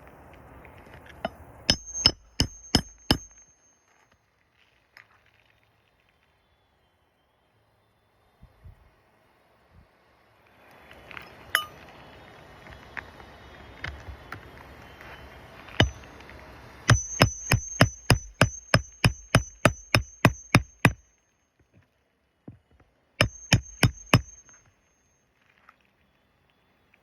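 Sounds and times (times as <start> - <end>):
hammer striking nails: 1.2 - 3.5, 15.7 - 16.1, 16.9 - 21.1, 23.2 - 24.6.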